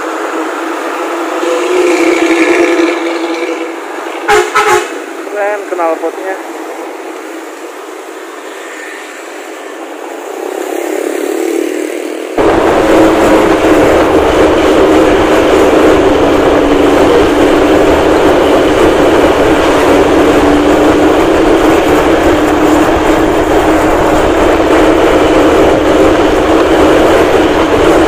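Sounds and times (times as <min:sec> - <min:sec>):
bus diesel engine and exhaust: 0:00.0 - 0:28.0
steady droning tone: 0:12.4 - 0:28.0.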